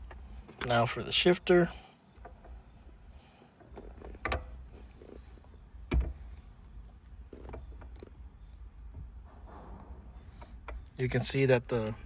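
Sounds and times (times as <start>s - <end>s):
shifter knocks and clicks: 3.6s - 12.0s.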